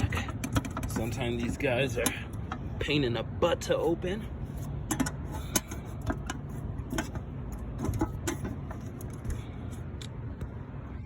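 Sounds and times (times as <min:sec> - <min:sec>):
metal clicks and knocks: 0:00.0 - 0:02.6, 0:04.6 - 0:09.4
steady low hum: 0:00.0 - 0:11.0.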